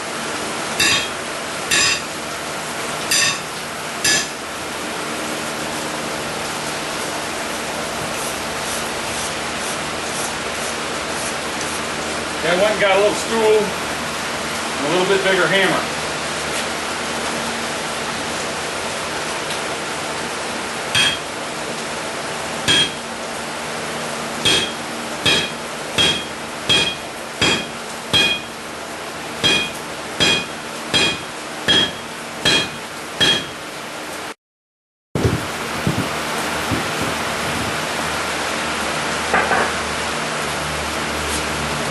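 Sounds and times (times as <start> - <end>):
hammer striking steel on anvil: 0.8 - 2.1, 3.1 - 4.4, 21.0 - 21.3, 22.7 - 23.0, 24.4 - 28.6, 29.4 - 33.6.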